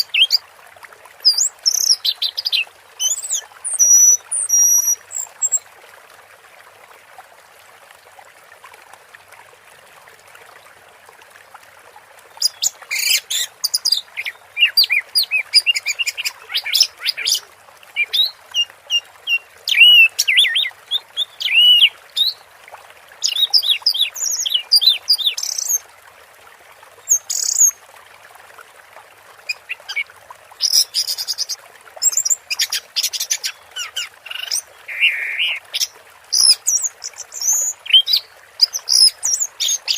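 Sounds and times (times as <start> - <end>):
bird singing whistled phrases: 18.0 - 22.4, 34.3 - 35.6.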